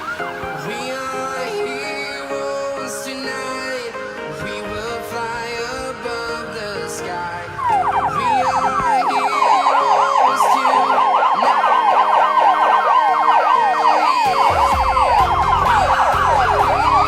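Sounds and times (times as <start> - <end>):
fire engine siren yelping: 0.0 - 1.5, 4.7 - 17.0
low siren and air horn tones: 7.5 - 17.0.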